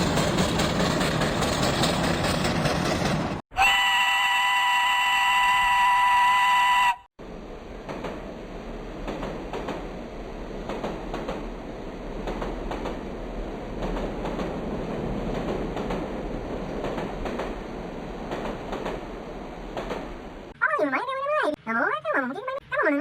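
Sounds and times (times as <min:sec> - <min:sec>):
train rumbling on rails: 0:00.0 - 0:03.4, 0:07.2 - 0:20.6
wheels clicking over rail joints: 0:00.0 - 0:03.4, 0:09.0 - 0:20.2.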